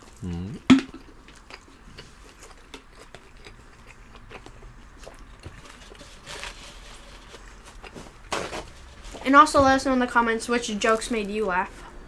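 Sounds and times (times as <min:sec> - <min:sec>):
chewing and biting pizza: 0:00.0 - 0:06.0, 0:06.9 - 0:09.0.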